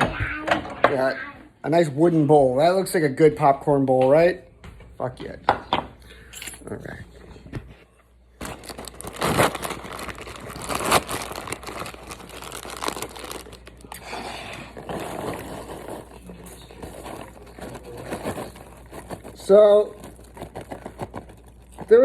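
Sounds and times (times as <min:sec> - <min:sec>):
paper bag crinkling: 0:08.4 - 0:22.0
popcorn being shaken out: 0:08.5 - 0:22.0.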